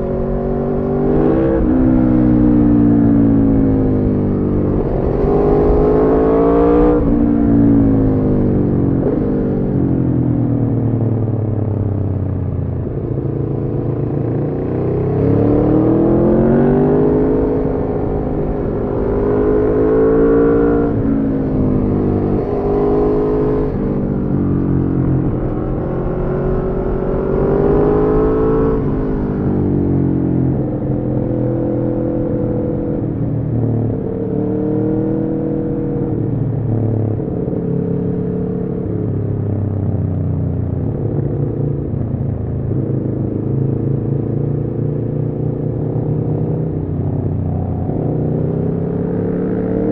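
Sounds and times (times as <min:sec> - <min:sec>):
motorcycle engine revving: 0:12.8 - 0:39.5.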